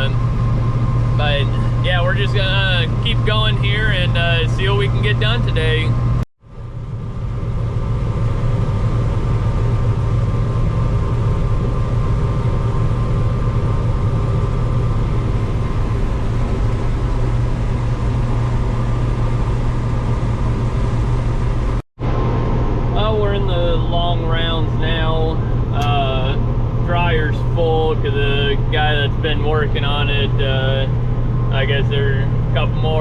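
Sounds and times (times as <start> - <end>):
machinery noise: 0.0 - 6.2, 8.0 - 33.0
combine harvester engine hum: 0.0 - 33.0.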